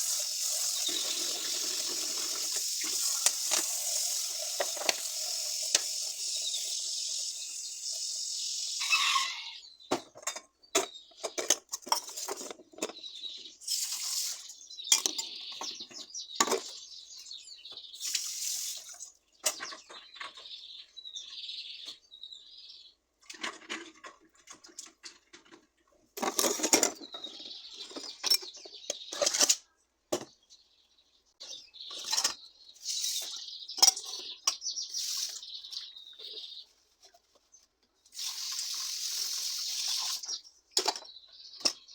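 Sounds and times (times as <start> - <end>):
water running from a tap: 0.0 - 9.2, 38.2 - 40.3.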